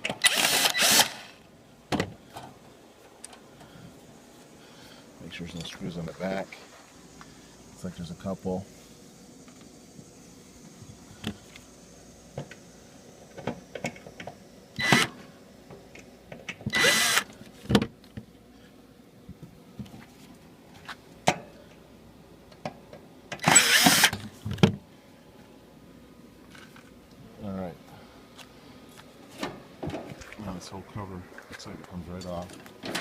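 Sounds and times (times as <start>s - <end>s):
power drill driving screws: 0.2s - 1.4s, 14.8s - 15.1s, 16.7s - 17.3s, 23.4s - 24.2s.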